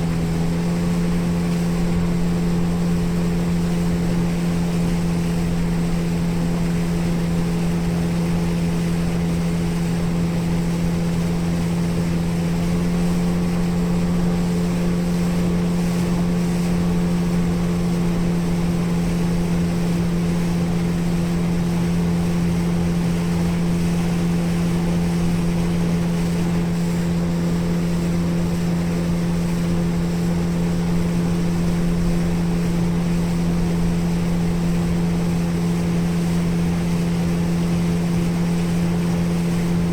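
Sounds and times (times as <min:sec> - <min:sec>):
outboard engine running: 0:00.0 - 0:39.9
water noise against hull: 0:00.0 - 0:39.9.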